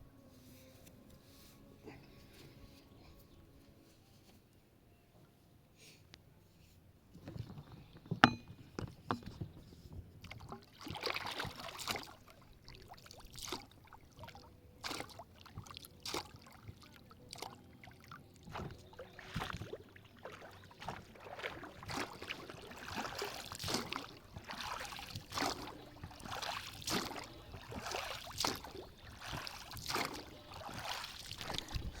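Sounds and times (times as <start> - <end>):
water splashing and lapping: 10.2 - 32.0.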